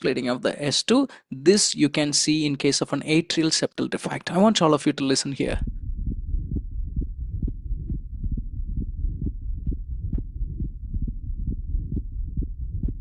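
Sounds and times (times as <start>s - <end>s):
heart flow murmur: 5.5s - 13.0s
heartbeat through stethoscope: 5.5s - 13.0s.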